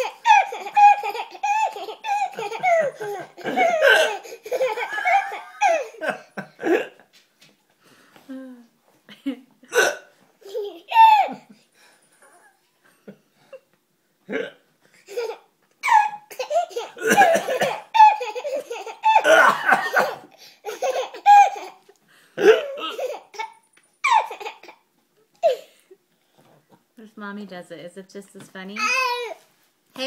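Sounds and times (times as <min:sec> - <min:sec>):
baby belly laughing: 0:00.0 - 0:06.9, 0:10.4 - 0:11.5, 0:15.1 - 0:21.8, 0:22.4 - 0:24.8
man hiccuping: 0:03.4 - 0:04.2, 0:06.6 - 0:07.0, 0:09.7 - 0:10.1, 0:14.3 - 0:14.7, 0:19.2 - 0:20.2, 0:22.4 - 0:23.0.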